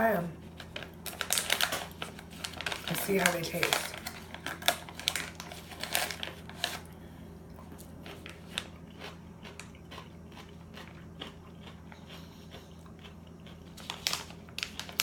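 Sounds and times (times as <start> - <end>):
soft chewing: 6.8 - 14.5
crunching bite of pickle: 7.6 - 14.5.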